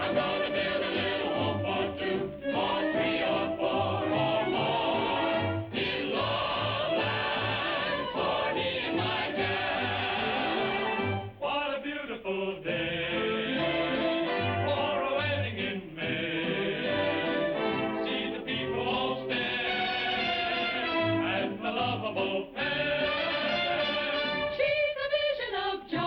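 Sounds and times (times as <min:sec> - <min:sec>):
band playing: 0:00.0 - 0:11.4, 0:13.2 - 0:15.2, 0:16.8 - 0:18.5, 0:22.9 - 0:24.7
voices singing with vibrato: 0:00.0 - 0:26.0.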